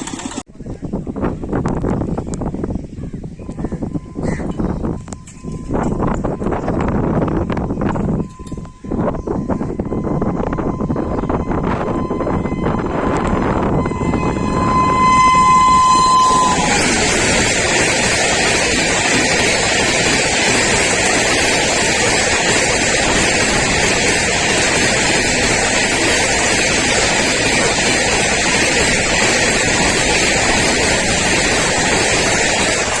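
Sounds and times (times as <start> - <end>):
train wheels roaring on rails: 0.0 - 0.5, 1.3 - 33.0
rushing air: 9.4 - 33.0.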